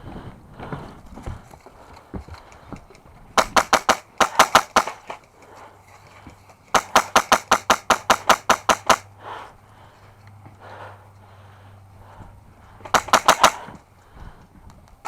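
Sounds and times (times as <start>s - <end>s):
airsoft rifle shots: 3.4s - 5.2s, 6.7s - 9.1s, 12.8s - 13.8s.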